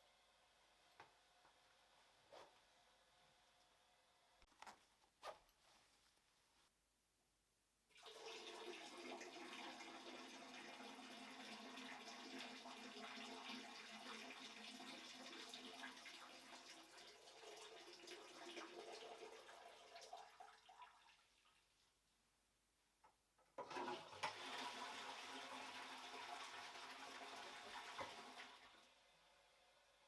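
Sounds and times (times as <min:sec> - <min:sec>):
urine splashing into toilet water: 0:07.9 - 0:21.6.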